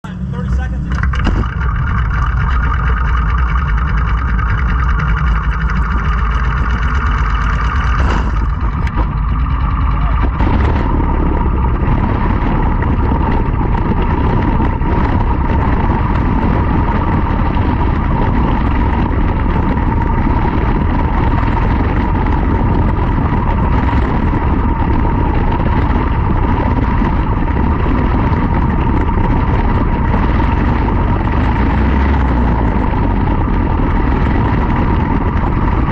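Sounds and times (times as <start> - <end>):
high-pitched whine: 0.0 - 35.9
race car engine running loud: 0.0 - 35.9.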